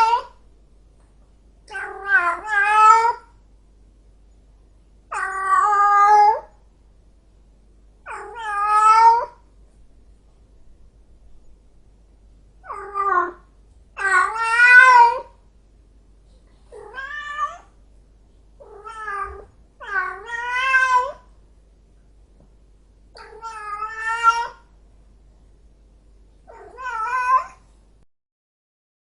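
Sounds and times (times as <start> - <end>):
cat meowing and yowling: 0.0 - 0.4, 1.7 - 3.3, 5.1 - 6.5, 8.1 - 9.4, 12.6 - 15.4, 16.7 - 17.7, 18.6 - 21.3, 23.2 - 24.6, 26.5 - 27.6.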